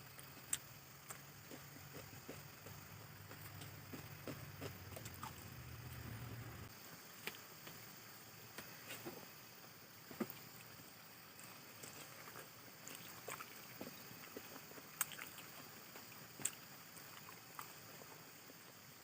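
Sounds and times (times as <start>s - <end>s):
person chewing food: 0.1s - 6.1s, 11.7s - 18.3s.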